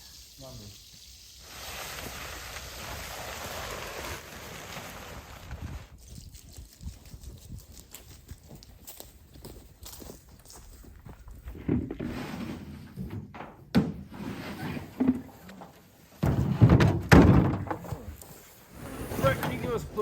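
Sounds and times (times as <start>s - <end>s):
rustling: 14.2s - 20.0s
dull thunks and knocks: 16.2s - 18.1s.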